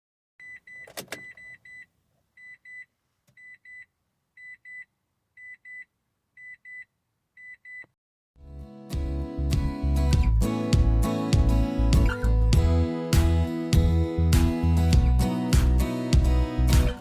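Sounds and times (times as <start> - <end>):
car warning chime double beep: 0.4 - 7.9.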